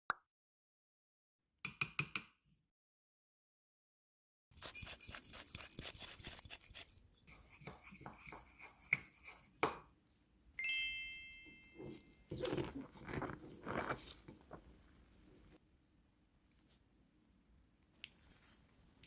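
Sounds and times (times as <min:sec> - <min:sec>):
bell-like ding: 0:10.6 - 0:12.2.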